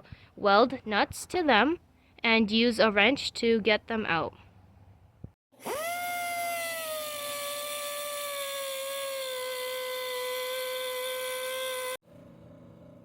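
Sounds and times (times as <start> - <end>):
rotary tool whining: 5.6 - 12.0.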